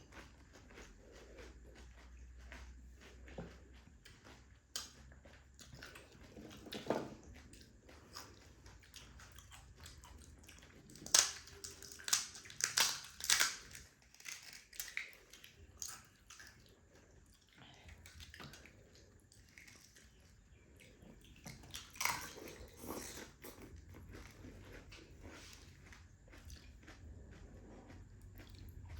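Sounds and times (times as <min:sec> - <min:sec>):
person chewing: 0:00.0 - 0:28.9
crisp shells crunching: 0:11.0 - 0:14.9.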